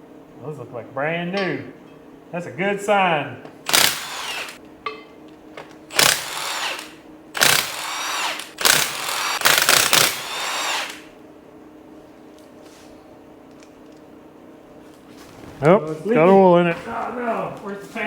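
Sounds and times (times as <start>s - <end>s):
power tool motor whirring: 3.7s - 4.6s, 5.9s - 11.1s.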